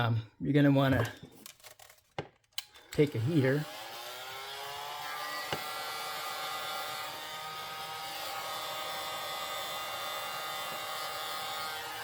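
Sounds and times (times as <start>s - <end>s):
heat gun motor whine: 2.8s - 12.0s.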